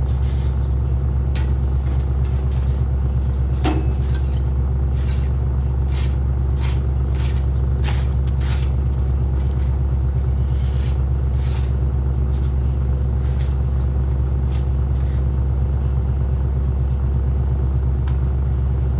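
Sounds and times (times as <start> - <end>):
wood chipper engine running: 0.0 - 18.9.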